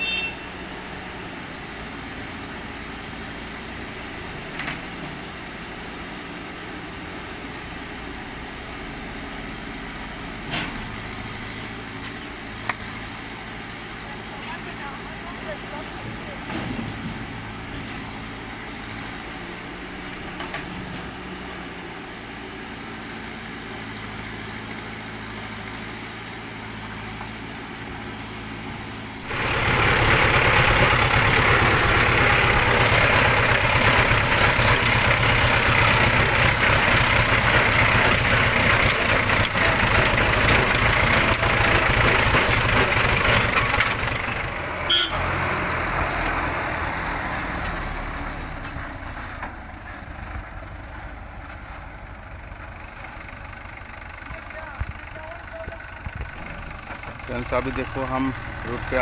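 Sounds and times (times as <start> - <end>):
diesel engine idling: 21.1 - 59.0
loud rough engine running: 22.2 - 47.3, 49.9 - 59.0.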